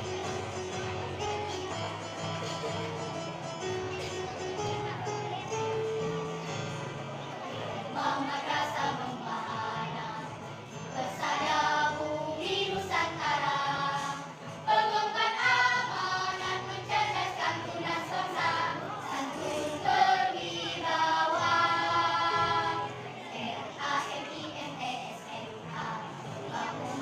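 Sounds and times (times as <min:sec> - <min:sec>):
choir singing: 0:07.2 - 0:27.0.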